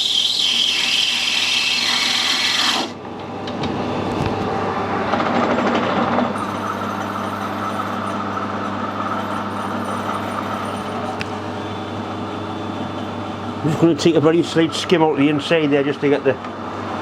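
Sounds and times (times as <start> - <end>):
metal lathe motor humming: 0.0 - 3.0, 6.4 - 12.2.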